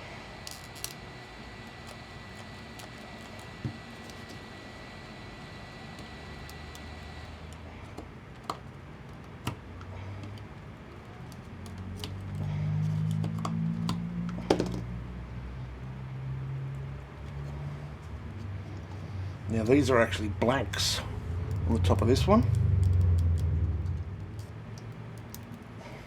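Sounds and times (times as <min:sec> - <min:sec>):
plastic clicks and taps: 0:13.1 - 0:14.9.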